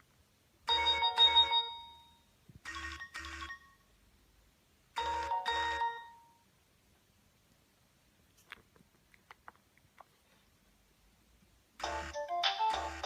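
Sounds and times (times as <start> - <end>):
mobile phone ringtone: 0.7 - 3.8, 5.0 - 6.4, 11.8 - 13.0.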